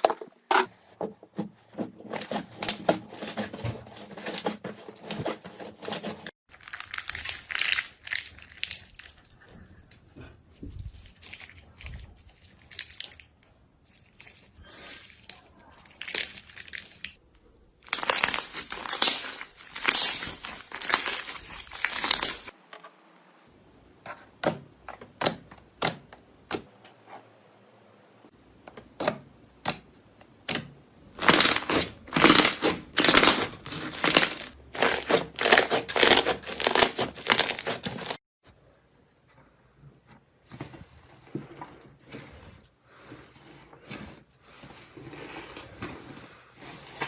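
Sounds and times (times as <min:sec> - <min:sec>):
slime crackling and popping: 0:06.5 - 0:09.3, 0:17.8 - 0:22.5, 0:31.2 - 0:38.2.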